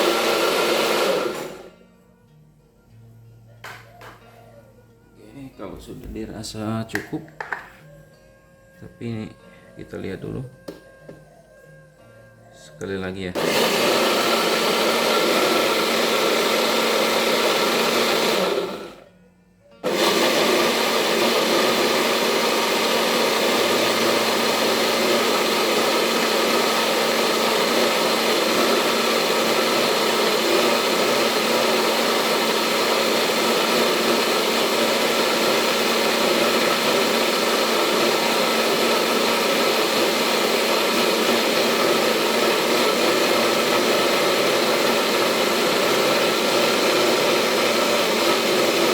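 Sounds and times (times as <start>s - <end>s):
electric blender running: 0.0s - 1.8s, 13.4s - 19.1s, 19.8s - 48.9s.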